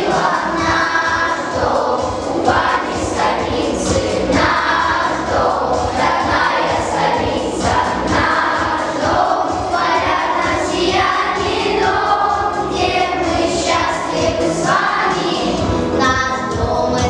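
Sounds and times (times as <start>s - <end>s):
children's choir singing: 0.0s - 17.0s
musical accompaniment: 0.0s - 17.0s.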